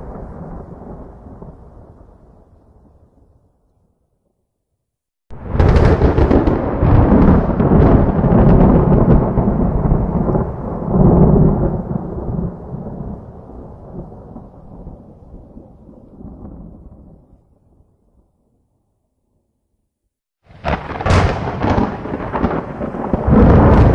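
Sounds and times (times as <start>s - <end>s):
thunder crack and rumble: 0.0s - 3.0s, 5.3s - 17.4s, 20.5s - 23.9s.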